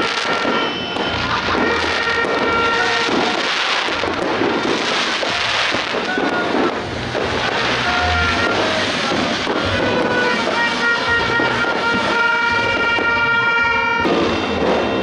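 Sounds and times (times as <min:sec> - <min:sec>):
fireworks banging and crackling: 0:00.0 - 0:15.0.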